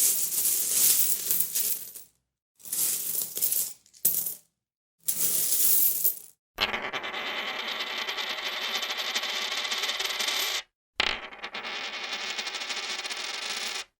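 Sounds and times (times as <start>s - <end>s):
metal coins clinking: 0.0s - 2.0s, 2.7s - 4.4s, 5.1s - 6.3s.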